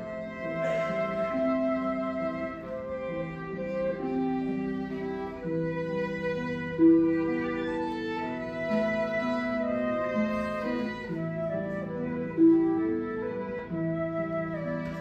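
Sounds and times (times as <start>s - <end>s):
bowed violin melody: 0.0s - 15.0s.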